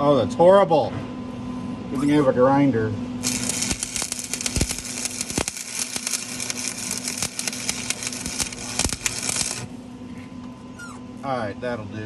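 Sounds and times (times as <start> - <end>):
sharp pops: 3.2 - 9.7
welding arc crackling: 3.2 - 9.8.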